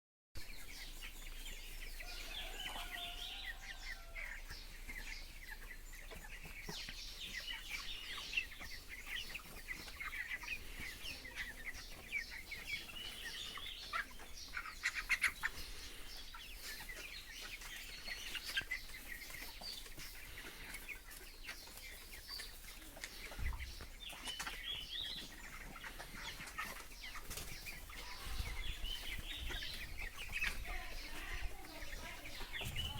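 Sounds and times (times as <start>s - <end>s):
chickens cheeping: 0.4s - 32.9s
wings flapping and scuffling: 16.6s - 32.9s.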